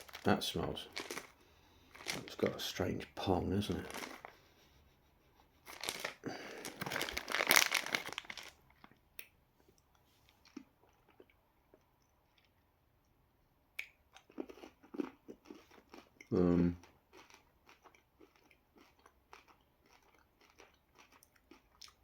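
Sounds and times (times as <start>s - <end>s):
wrapper crinkling and tearing: 0.0s - 2.7s, 3.6s - 4.3s, 5.7s - 8.8s.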